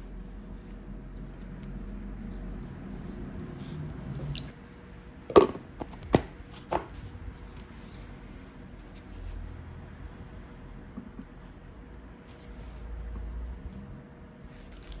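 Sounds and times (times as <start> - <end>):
sharp taps on table: 5.3 - 6.9.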